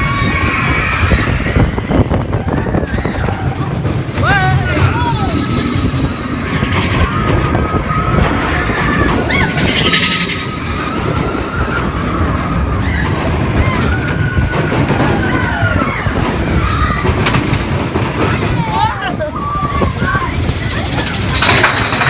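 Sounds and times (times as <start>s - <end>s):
roller coaster rumble and rattle: 0.0s - 22.0s
high held squeals: 4.3s - 14.5s.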